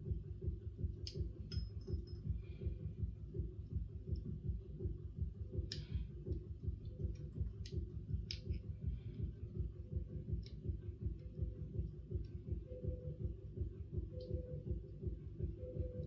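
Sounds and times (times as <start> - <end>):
low rhythmic throbbing hum: 0.0 - 16.0
metallic clicks of handcuffs: 1.0 - 2.2, 7.1 - 8.7.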